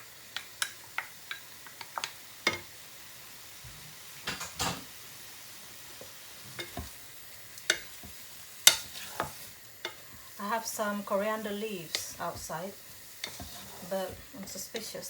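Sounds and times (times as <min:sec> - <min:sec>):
frying food sizzling: 0:00.0 - 0:15.0
utensil scraping and knocking pan: 0:07.7 - 0:10.2, 0:11.9 - 0:14.9.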